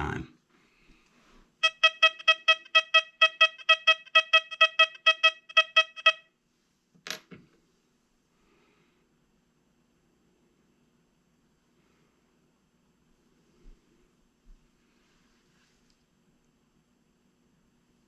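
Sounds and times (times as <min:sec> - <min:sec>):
metal detector short beeps: 0:01.6 - 0:06.2.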